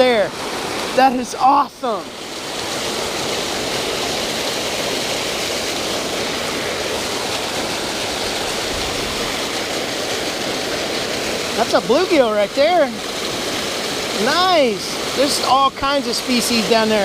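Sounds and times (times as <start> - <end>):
water pouring over spillway: 0.0 - 17.0.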